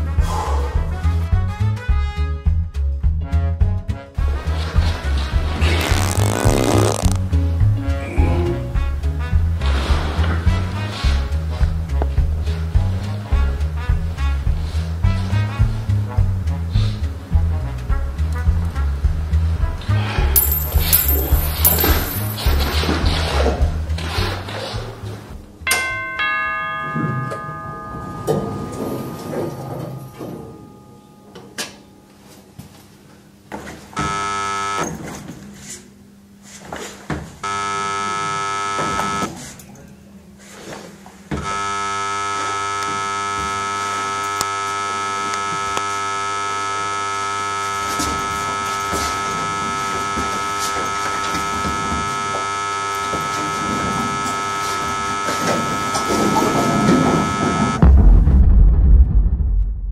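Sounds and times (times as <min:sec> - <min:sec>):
bell-like ding: 0:20.4 - 0:22.6, 0:25.7 - 0:32.1
steady buzzer tone: 0:20.4 - 0:22.7, 0:25.7 - 0:32.5, 0:34.0 - 0:35.0, 0:37.4 - 0:39.3, 0:41.4 - 0:57.8.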